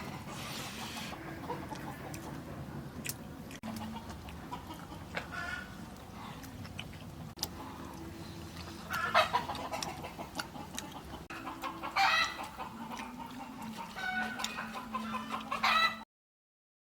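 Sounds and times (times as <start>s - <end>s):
chickens clucking: 0.0s - 6.4s, 8.6s - 16.0s
low steady hum: 0.0s - 15.5s.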